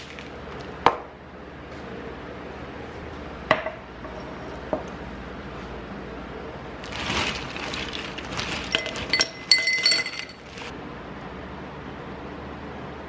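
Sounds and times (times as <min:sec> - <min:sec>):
glassware clinking: 0:08.7 - 0:10.7.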